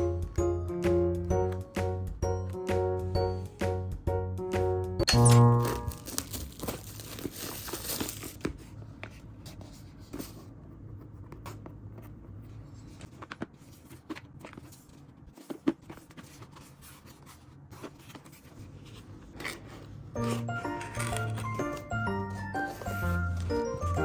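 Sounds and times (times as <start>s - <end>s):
wrapping tearing and crinkling: 5.4s - 8.5s.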